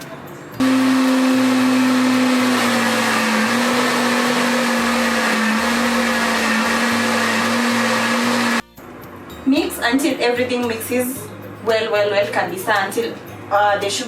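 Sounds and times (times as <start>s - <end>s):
blender running: 0.6s - 8.6s.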